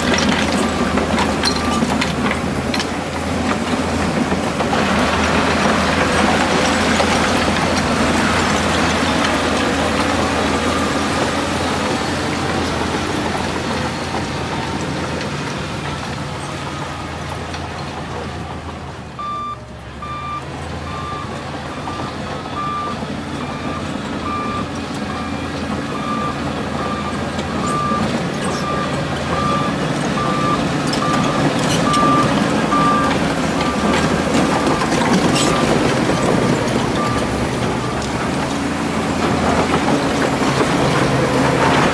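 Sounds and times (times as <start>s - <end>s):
diesel engine running: 0.0s - 41.9s
reversing alarm beeping: 19.2s - 38.2s.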